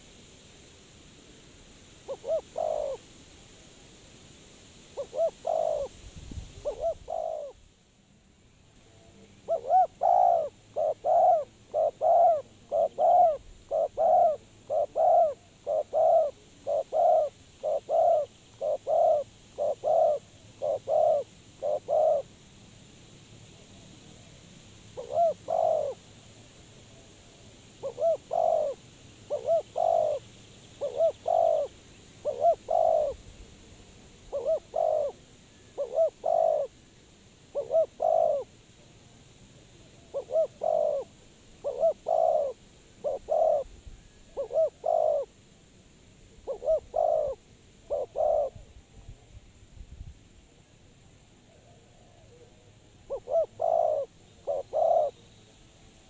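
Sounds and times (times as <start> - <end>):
dove cooing: 2.0 - 3.0, 5.0 - 5.9, 6.6 - 7.6, 9.4 - 22.3, 25.0 - 26.0, 27.8 - 30.2, 30.8 - 33.2, 34.3 - 36.7, 37.5 - 38.5, 40.0 - 45.3, 46.4 - 48.7, 53.1 - 55.2.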